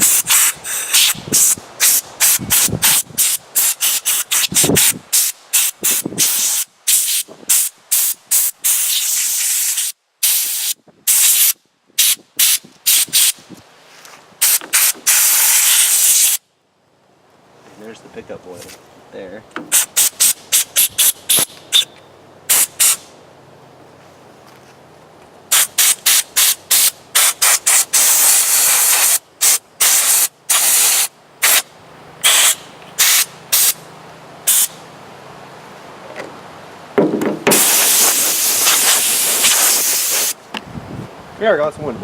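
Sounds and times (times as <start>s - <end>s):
compressed air blow gun hissing: 0.0s - 13.5s, 14.4s - 16.4s, 19.6s - 21.9s, 22.5s - 23.1s, 25.5s - 33.8s, 34.5s - 34.8s, 37.5s - 40.4s.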